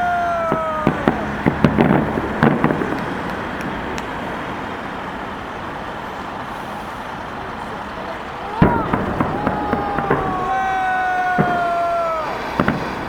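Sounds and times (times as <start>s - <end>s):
sharp cracks: 0.0s - 5.4s, 8.5s - 13.0s
traffic and street noise: 0.0s - 13.0s.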